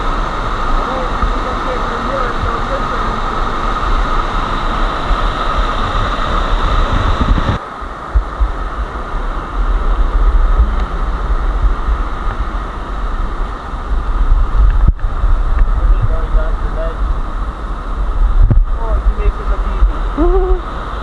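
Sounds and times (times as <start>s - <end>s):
rumbling thumps on microphone: 5.8s - 8.6s, 10.0s - 12.4s, 13.8s - 20.1s.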